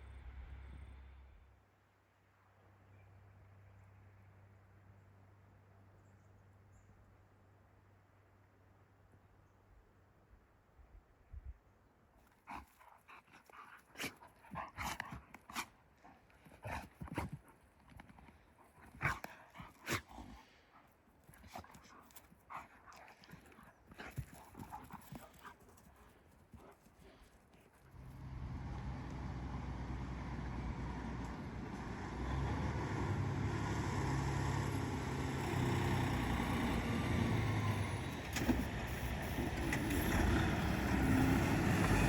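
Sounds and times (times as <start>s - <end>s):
heavy machine engine running: 28.0s - 42.0s.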